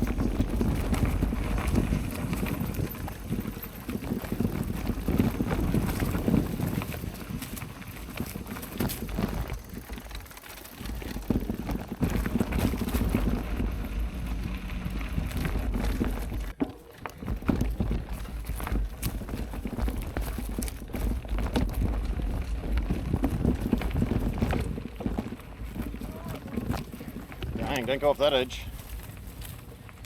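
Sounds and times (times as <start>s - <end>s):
wind rumble on microphone: 0.0s - 10.2s, 10.8s - 16.6s, 17.3s - 30.0s
bike rattling: 0.0s - 30.0s
bike tyres crunching on rocks: 0.0s - 30.0s.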